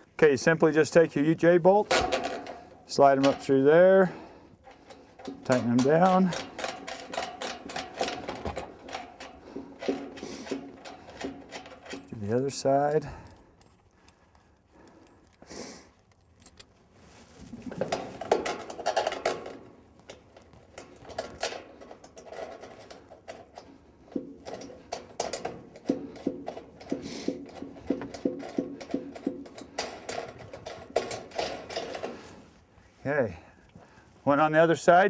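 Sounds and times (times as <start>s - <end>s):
metal bolts clicking and clattering: 1.7s - 13.8s, 17.7s - 32.3s.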